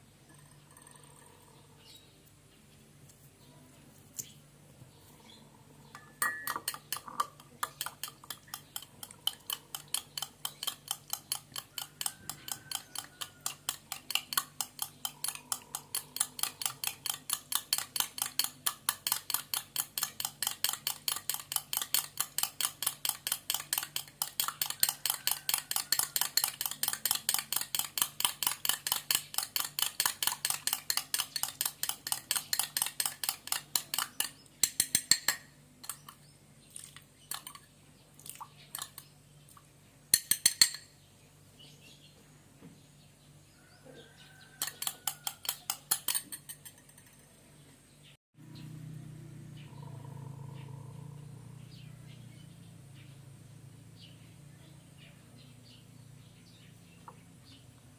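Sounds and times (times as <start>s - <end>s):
spoon clinking in a cup: 0.3s - 1.3s, 6.0s - 36.2s, 40.2s - 40.9s, 44.5s - 47.3s.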